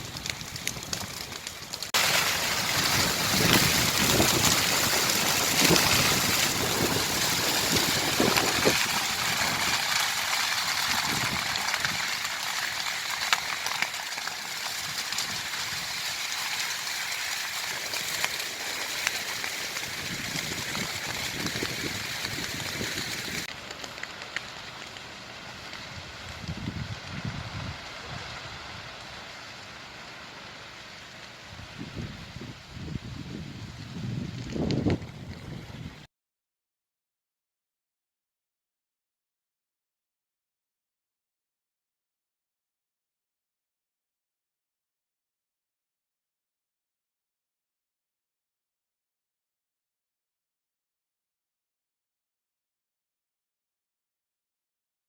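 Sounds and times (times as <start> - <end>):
grass fire crackling: 0.0 - 36.1.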